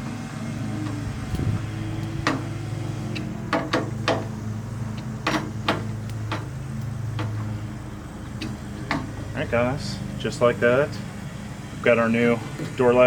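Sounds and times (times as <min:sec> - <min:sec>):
metallic clicks and knocks on latch: 0:04.9 - 0:07.4.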